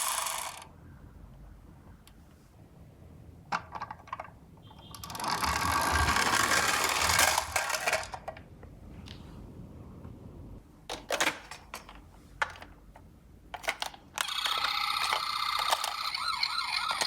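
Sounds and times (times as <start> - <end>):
toy car wheels rattling: 0.0 - 0.7, 3.6 - 8.4, 13.6 - 17.0.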